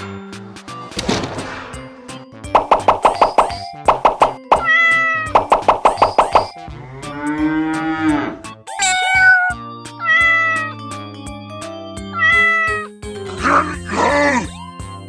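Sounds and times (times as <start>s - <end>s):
background music with a beat: 2.5s - 6.7s
cat meowing: 4.6s - 5.3s, 8.8s - 10.8s, 12.2s - 12.9s.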